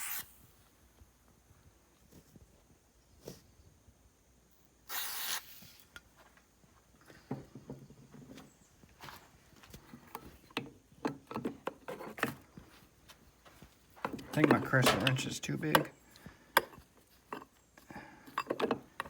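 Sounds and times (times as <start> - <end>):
aerosol spray can hiss: 4.9 - 5.8
wrench clinking on metal: 14.0 - 16.0, 18.3 - 19.0.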